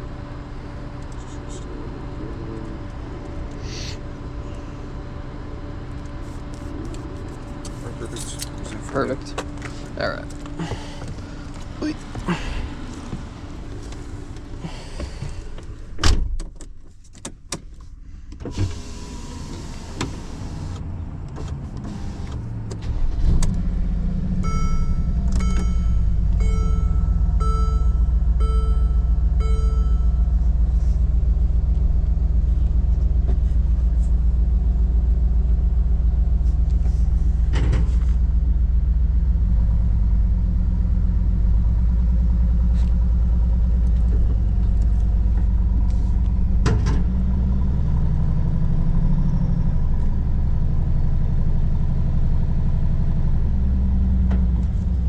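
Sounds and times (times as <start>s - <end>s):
vehicle engine idling: 0.0s - 16.0s, 16.7s - 55.0s
door and latch clunks: 15.9s - 17.7s
dashboard warning chime beeping: 24.4s - 30.5s.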